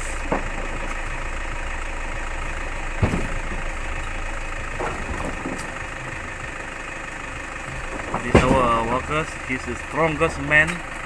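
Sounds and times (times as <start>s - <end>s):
vehicle engine idling: 0.0s - 11.0s
short knocks: 7.7s - 9.2s.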